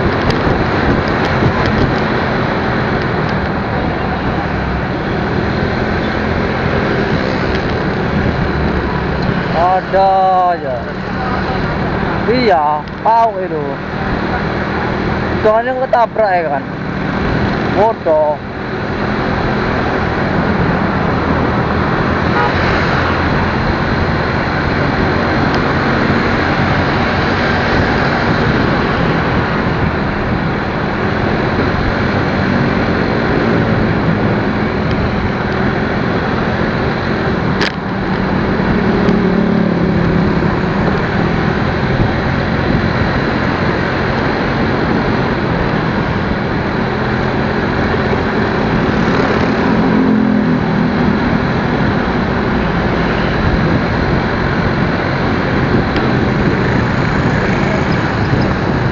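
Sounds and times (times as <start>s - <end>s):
vehicle engine and road noise: 0.0s - 58.9s.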